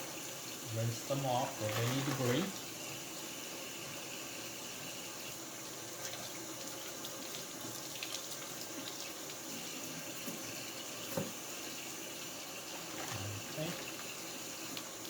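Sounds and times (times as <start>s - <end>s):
tap running into sink: 1.5s - 2.6s, 6.0s - 11.6s
small splashes and clatters: 1.6s - 2.5s, 12.7s - 14.9s.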